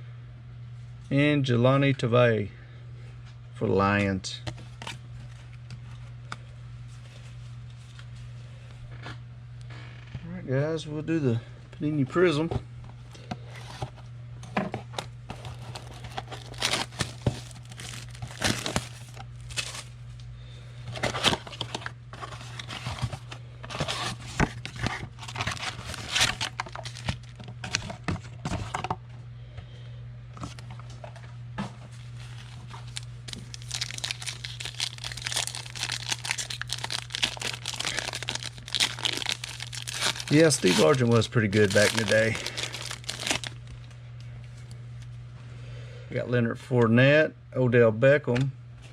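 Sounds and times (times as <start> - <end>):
steady low hum: 0.0 - 48.9
plastic wrappers crinkling and tearing: 15.3 - 19.9, 21.0 - 28.1, 32.0 - 43.9.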